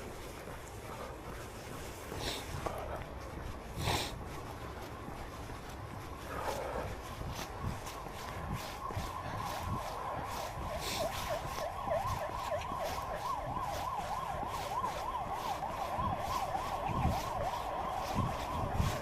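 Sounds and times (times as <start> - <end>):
running footfalls: 0.0 - 19.0
siren yelping: 6.2 - 19.0.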